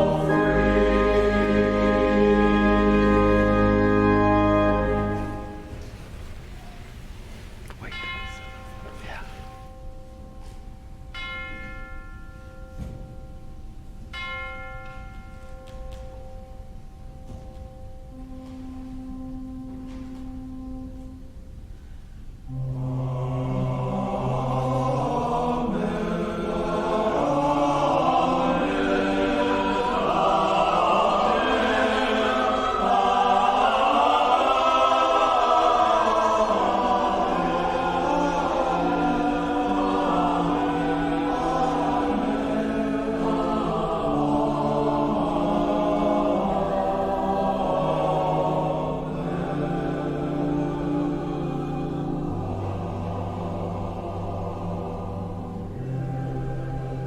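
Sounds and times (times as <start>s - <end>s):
group singing a hymn: 0.0s - 6.2s, 22.5s - 57.0s.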